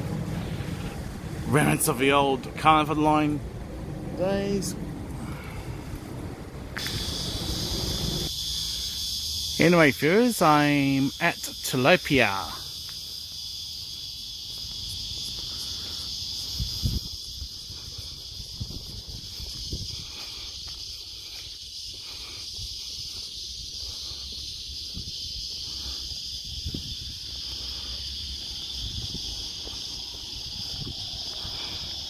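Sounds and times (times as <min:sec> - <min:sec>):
wind rumble on microphone: 0:00.0 - 0:08.3, 0:16.0 - 0:21.4, 0:24.5 - 0:32.0
insect chorus: 0:00.0 - 0:32.0.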